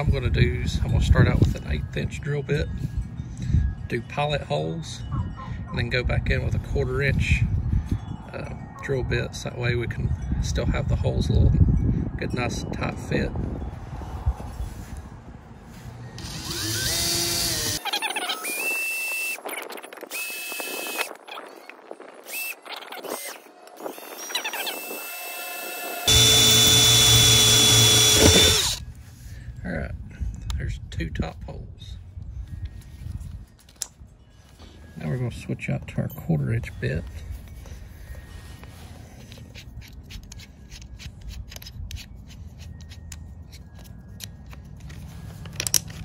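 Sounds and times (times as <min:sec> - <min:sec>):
power drill whining through metal: 0:16.2 - 0:19.4, 0:20.1 - 0:21.1, 0:22.2 - 0:28.8.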